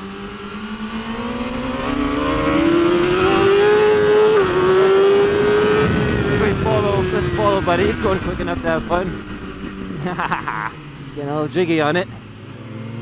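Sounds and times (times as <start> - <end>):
motorcycle engine accelerating: 0.0 - 13.0
wind noise: 1.3 - 10.0.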